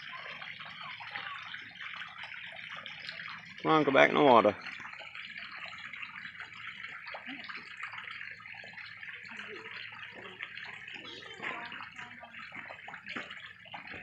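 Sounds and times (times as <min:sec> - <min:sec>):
faint voices: 0:00.0 - 0:02.2, 0:09.1 - 0:14.0
running water in pool: 0:00.0 - 0:14.0.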